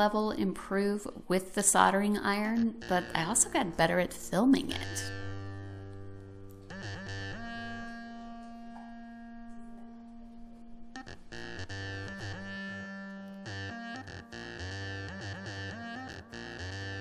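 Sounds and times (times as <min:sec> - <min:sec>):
synthesizer music: 0:04.7 - 0:17.0.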